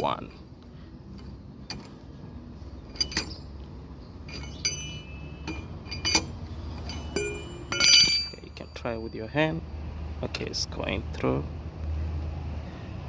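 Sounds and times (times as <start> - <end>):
spanner clinking on wheel nut: 1.1 - 2.0, 2.8 - 3.6, 4.2 - 9.4.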